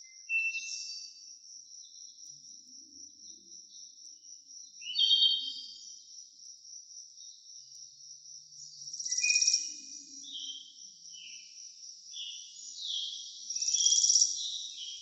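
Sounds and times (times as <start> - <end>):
insects trilling: 0.1 - 15.0.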